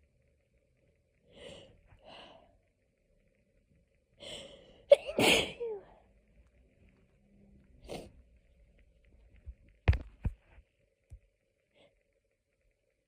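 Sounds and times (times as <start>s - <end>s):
person sneezing: 4.9s - 5.9s.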